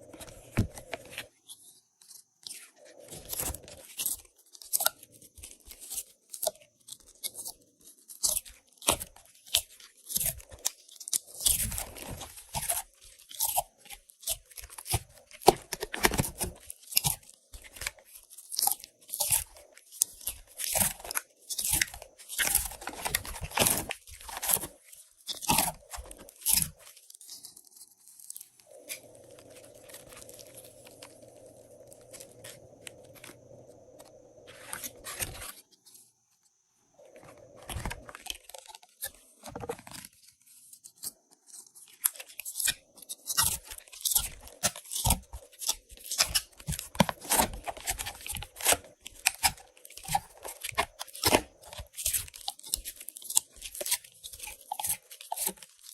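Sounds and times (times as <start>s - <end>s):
faint steady hum: 18.7s - 39.8s.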